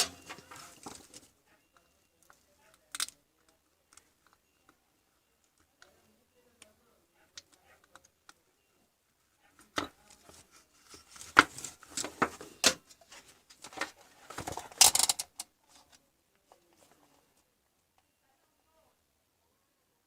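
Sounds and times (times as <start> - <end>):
small objects clicking and knocking: 0.0 - 4.8, 9.7 - 15.5.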